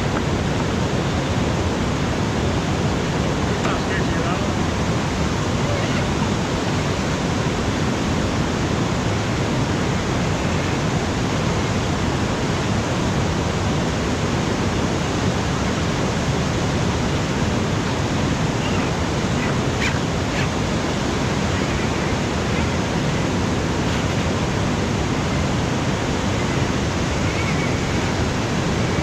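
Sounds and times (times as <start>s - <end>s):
steady rushing noise: 0.0s - 29.0s.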